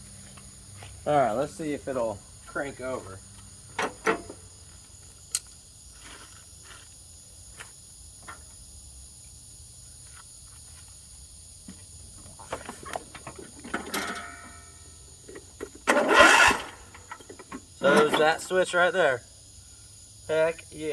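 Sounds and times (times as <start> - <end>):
handling clicks and knocks: 12.2 - 14.6.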